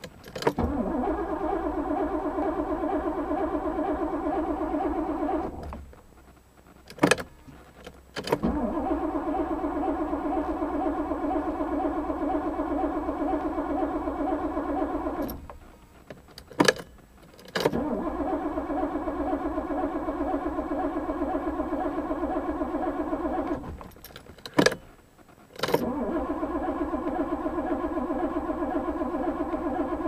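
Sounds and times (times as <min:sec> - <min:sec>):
engine cranking on starter motor: 0:00.0 - 0:05.8, 0:08.2 - 0:15.6, 0:17.5 - 0:24.8, 0:25.6 - 0:30.0.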